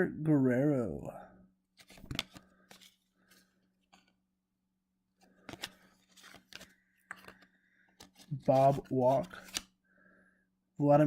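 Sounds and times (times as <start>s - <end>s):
trading cards flipped by hand: 1.7s - 4.2s, 5.2s - 9.8s.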